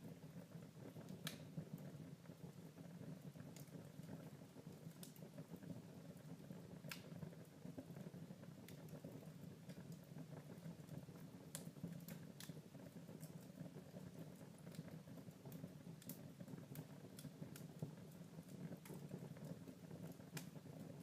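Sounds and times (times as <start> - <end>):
wood fire crackling: 0.0 - 21.0.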